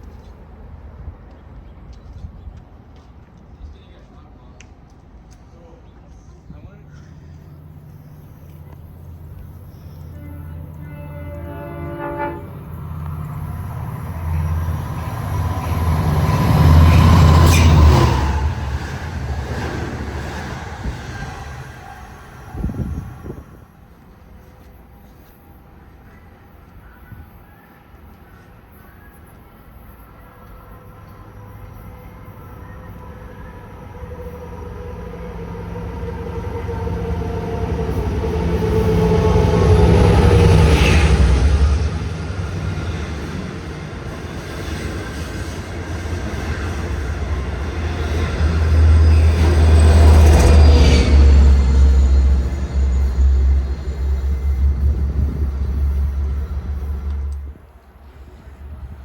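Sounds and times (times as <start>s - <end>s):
train rumbling past: 0.0s - 59.0s
train horn: 7.2s - 23.5s, 30.4s - 45.3s.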